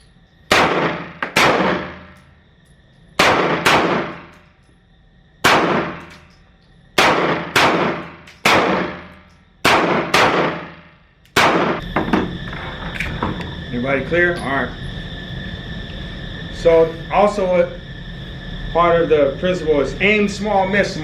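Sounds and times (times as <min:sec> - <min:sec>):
echoing handgun shots: 0:00.5 - 0:02.2, 0:03.2 - 0:04.4, 0:05.4 - 0:06.2, 0:07.0 - 0:11.8.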